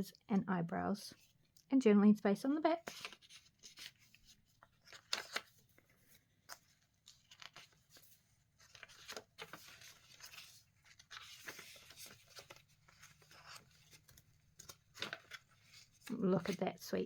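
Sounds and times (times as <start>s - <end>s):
paper pages rustling: 2.8s - 16.8s.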